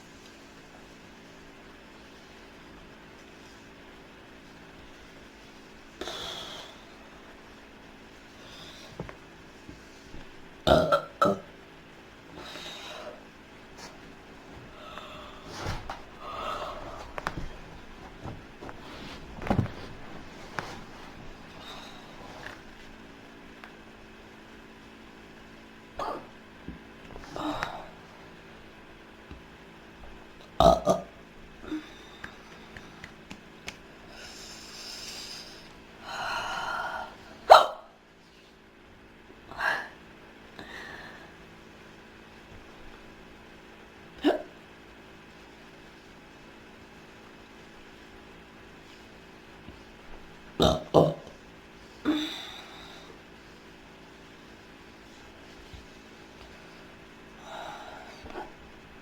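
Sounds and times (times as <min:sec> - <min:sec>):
breathing: 0:08.4 - 0:09.1, 0:34.0 - 0:37.4, 0:40.6 - 0:41.4, 0:56.4 - 0:58.5
woman burping: 0:10.6 - 0:11.6, 0:30.6 - 0:31.8, 0:44.2 - 0:44.5, 0:50.6 - 0:51.4.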